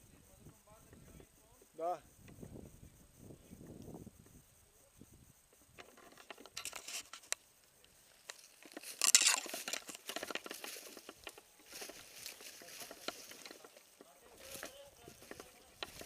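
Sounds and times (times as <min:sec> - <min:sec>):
crackling footsteps: 0:05.4 - 0:16.0
irregular clicks: 0:05.7 - 0:16.0
clothing and gear rustling: 0:08.2 - 0:16.0.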